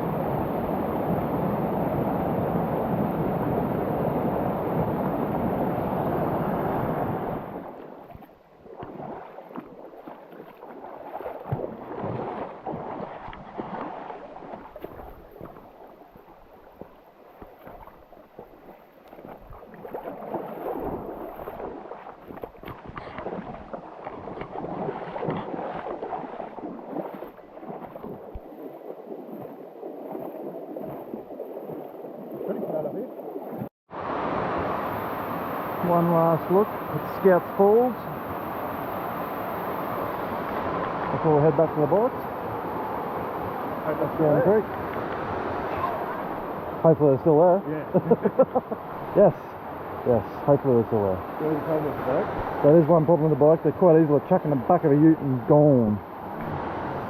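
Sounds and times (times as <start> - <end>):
running water: 0.0 - 57.0
water rushing over falls: 34.0 - 47.8.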